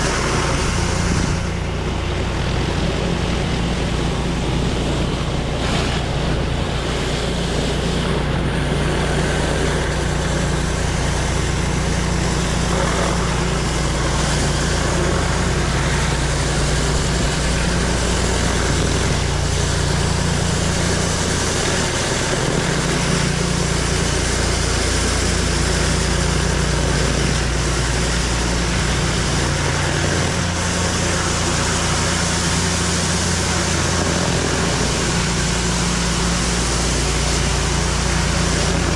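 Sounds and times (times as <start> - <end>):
pressure washer engine running: 0.0 - 38.9
water spraying hiss: 8.8 - 38.9.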